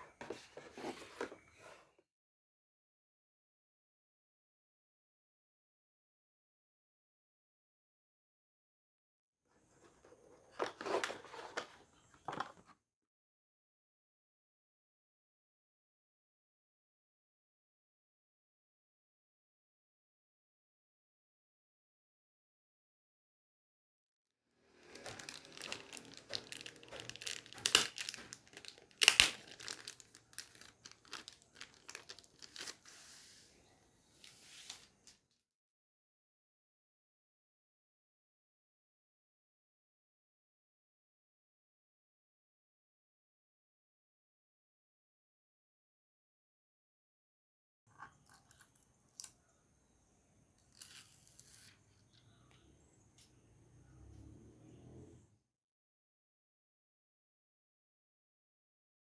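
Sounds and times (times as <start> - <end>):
plastic packaging crinkling: 24.8 - 32.9.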